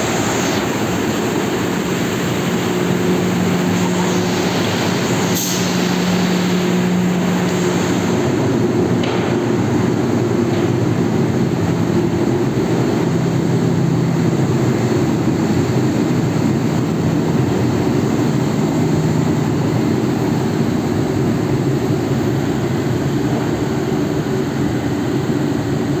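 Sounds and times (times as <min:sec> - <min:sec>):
industrial fans rushing air: 0:00.0 - 0:26.0.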